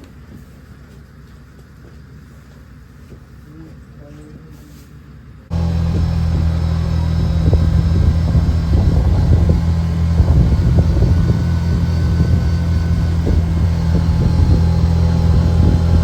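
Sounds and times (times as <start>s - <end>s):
vehicle engine running: 5.5s - 16.0s.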